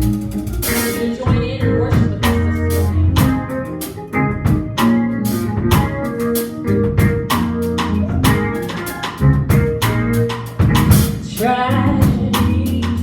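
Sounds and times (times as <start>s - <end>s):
worship band playing: 0.0s - 13.0s
drum hits: 6.8s - 11.3s.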